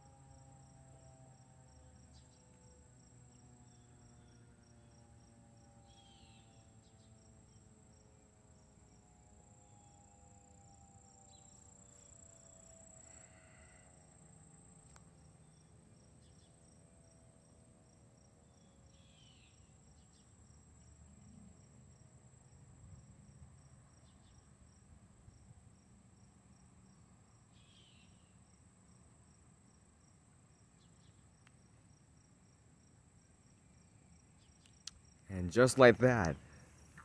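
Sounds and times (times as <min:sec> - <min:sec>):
distant siren winding down: 0:00.0 - 0:17.4.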